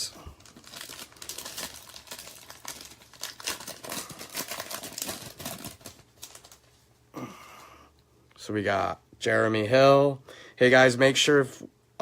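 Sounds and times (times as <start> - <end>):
foil crinkling and tearing: 0.0 - 6.8
foil wrapper crinkling and tearing: 0.0 - 6.9.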